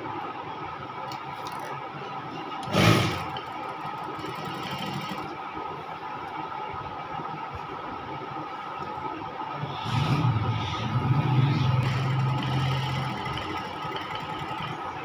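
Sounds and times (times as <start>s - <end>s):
sewing machine running: 2.6s - 5.4s, 10.0s - 15.0s
loud rush of noise: 9.3s - 14.4s.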